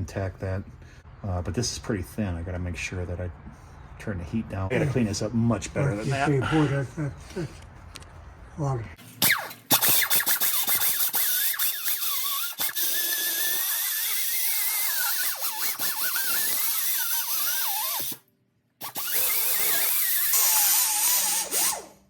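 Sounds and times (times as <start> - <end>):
die grinder grinding metal: 9.2 - 18.2, 18.8 - 22.0.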